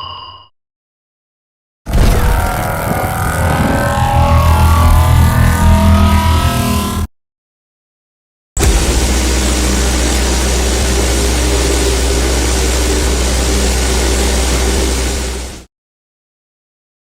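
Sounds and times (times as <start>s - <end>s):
synthesized laser beam: 2.0s - 7.1s, 8.6s - 15.7s.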